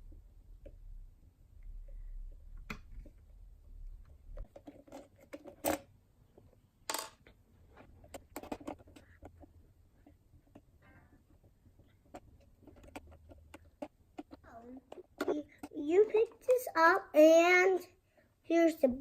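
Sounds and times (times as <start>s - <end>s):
clicks and taps on plastic parts: 8.0s - 10.7s, 11.8s - 15.8s.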